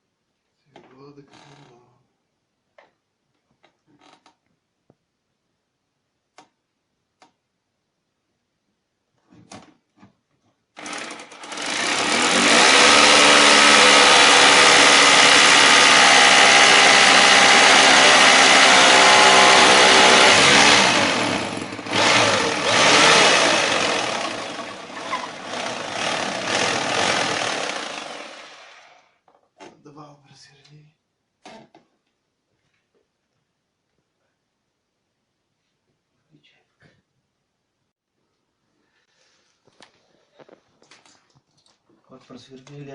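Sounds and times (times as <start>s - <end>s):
power drill boring into wood: 10.8s - 29.0s.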